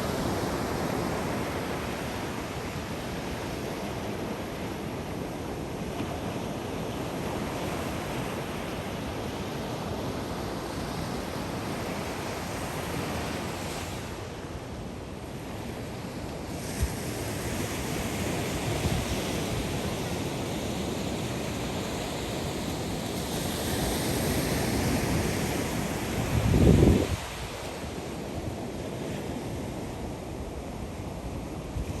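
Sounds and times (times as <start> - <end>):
ocean waves washing on beach: 0.0 - 32.0
wind buffeting microphone: 24.8 - 28.0.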